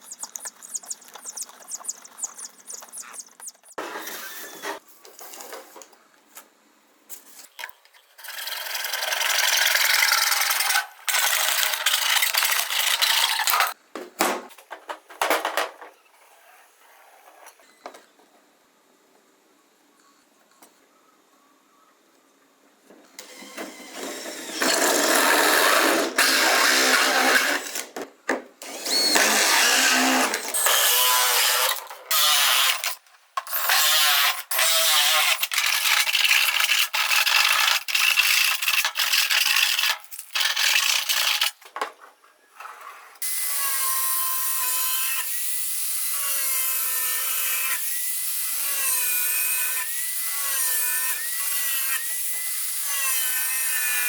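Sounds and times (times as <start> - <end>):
power tool whining: 28.6 - 32.9.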